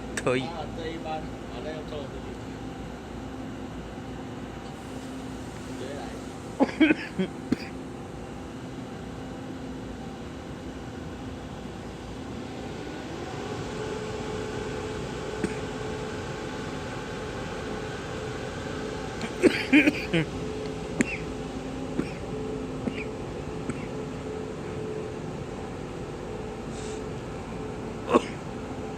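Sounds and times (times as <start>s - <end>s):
train electric hum: 0.0s - 28.9s.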